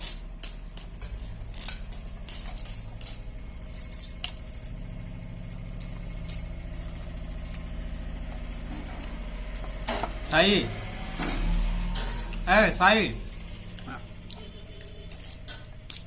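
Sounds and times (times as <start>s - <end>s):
light metallic clinks and jingles: 0.0s - 9.2s, 14.4s - 16.0s
steady low hum: 0.0s - 16.0s.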